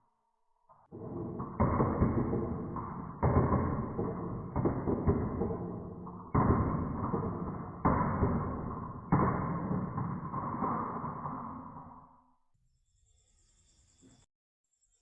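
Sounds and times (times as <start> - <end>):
marbles rattling down wooden run: 1.0 - 11.8.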